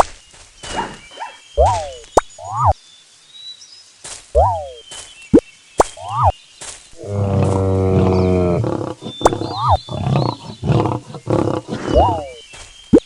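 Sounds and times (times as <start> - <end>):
large animal roaring: 7.0 - 12.2
animal grunts and calls: 7.0 - 12.4.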